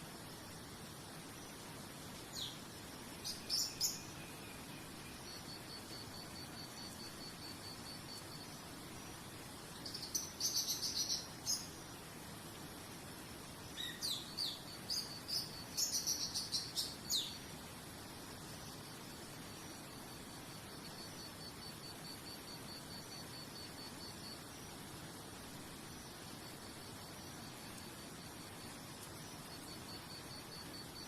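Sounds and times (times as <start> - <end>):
faint steady hiss: 0.0 - 31.0
insect chirping: 0.0 - 31.0
songbirds chirping: 0.5 - 22.0.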